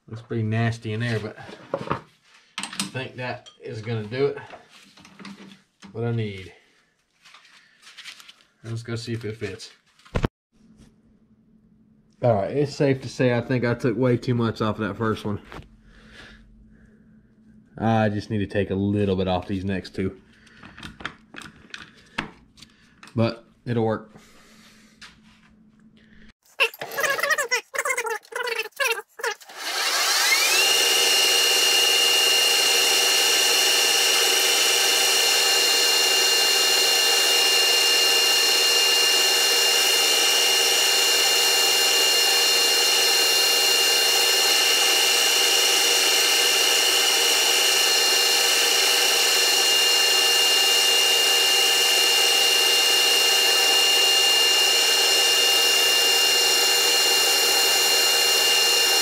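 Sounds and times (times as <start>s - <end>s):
metal lathe whining: 29.5s - 59.0s.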